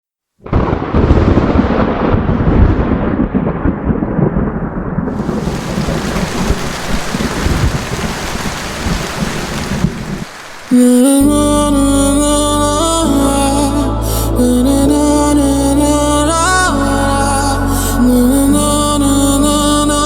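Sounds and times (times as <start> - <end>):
thunder rumbling: 0.4 - 20.0
steady rain hiss: 5.1 - 11.2.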